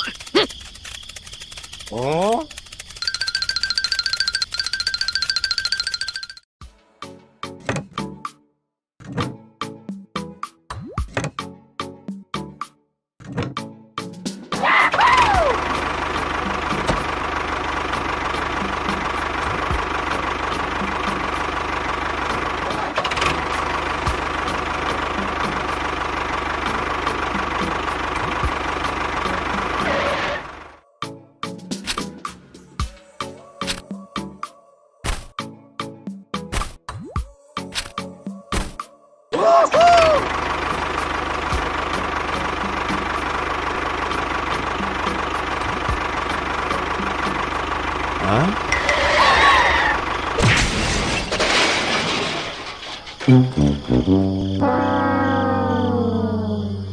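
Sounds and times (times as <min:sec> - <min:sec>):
engine knock: 0:00.0 - 0:06.4, 0:15.6 - 0:30.6, 0:40.1 - 0:48.9
small engine chugging: 0:00.0 - 0:06.5, 0:15.0 - 0:30.8, 0:39.8 - 0:50.4.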